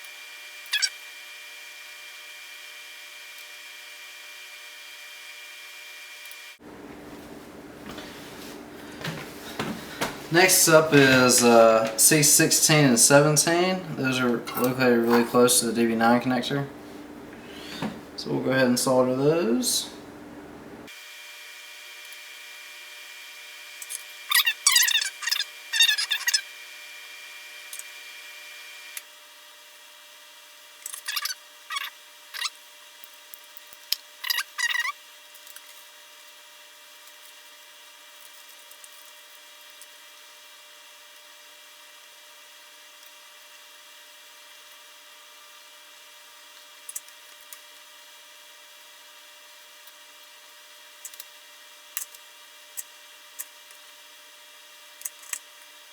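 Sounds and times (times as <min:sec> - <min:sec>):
faint steady hum: 0:06.6 - 0:20.9
squeaky scraping strokes: 0:24.3 - 0:26.4.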